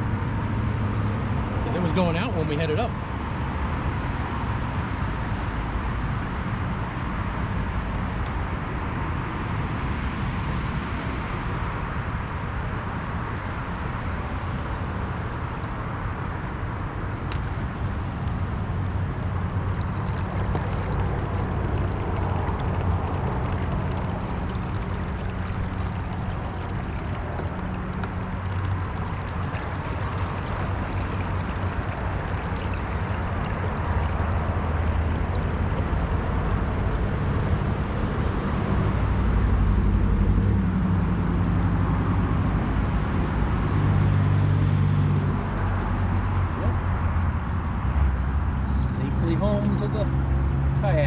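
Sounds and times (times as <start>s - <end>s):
boat motor humming: 17.1s - 38.3s
water rushing along hull: 17.1s - 39.8s.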